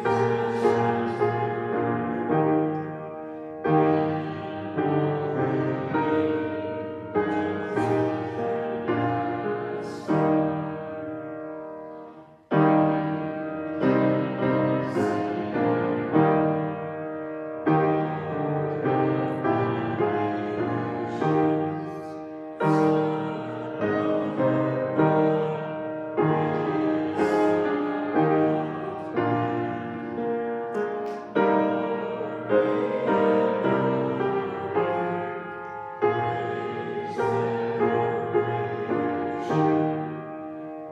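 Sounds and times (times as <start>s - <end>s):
piano playing slow chords: 0.0s - 40.9s.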